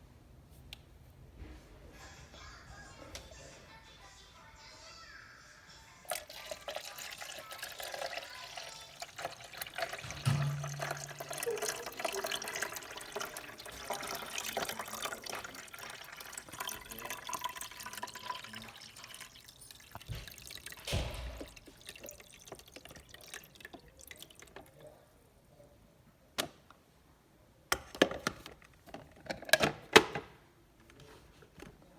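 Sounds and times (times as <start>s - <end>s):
water running and splashing: 6.1s - 24.8s
thump: 20.9s - 21.5s.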